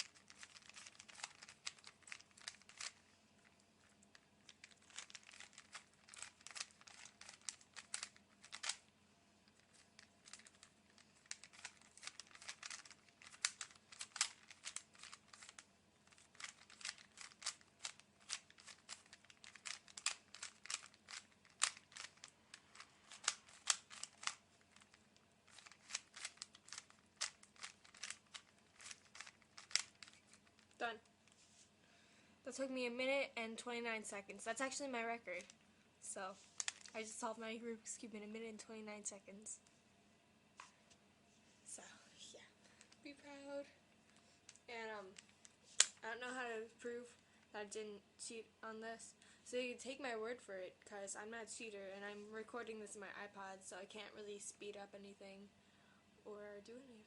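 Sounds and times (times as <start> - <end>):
plastic puzzle cube clicking: 0.0 - 3.0, 4.1 - 8.9, 9.5 - 30.8, 36.6 - 36.9.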